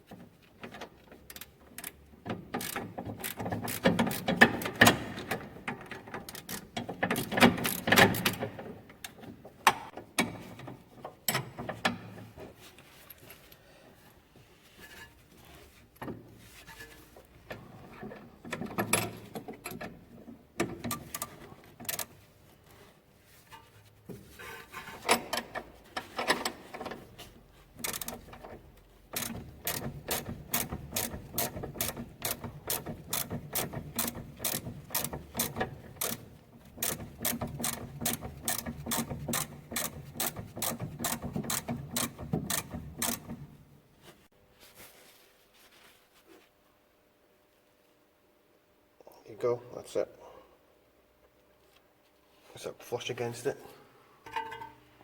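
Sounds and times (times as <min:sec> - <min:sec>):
ratchet spanner clicking: 0:02.6 - 0:04.6, 0:27.8 - 0:28.3, 0:29.1 - 0:43.5.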